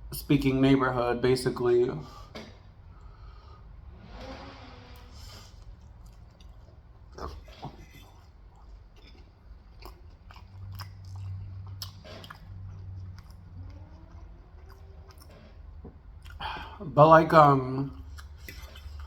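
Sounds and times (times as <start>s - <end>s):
low steady hum: 0.0s - 19.0s
crisp chewing crunches: 5.4s - 16.6s, 17.8s - 19.0s
wet mouth clicks: 5.6s - 15.5s, 18.0s - 19.0s.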